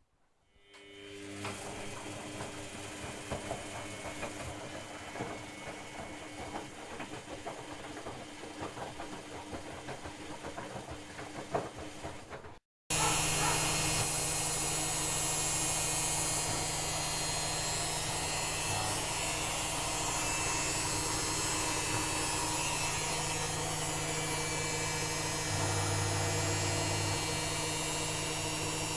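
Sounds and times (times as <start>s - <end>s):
washing machine spin hum: 0.9s - 28.9s
washing machine drum knocking: 1.8s - 13.6s.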